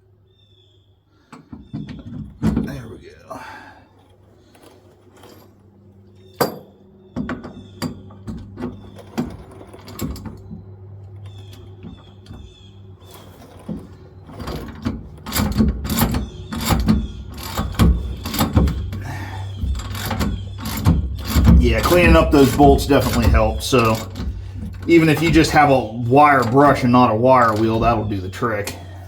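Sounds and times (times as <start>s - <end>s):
steady low hum: 2.4s - 29.0s
sharp metal clicks: 13.1s - 28.9s.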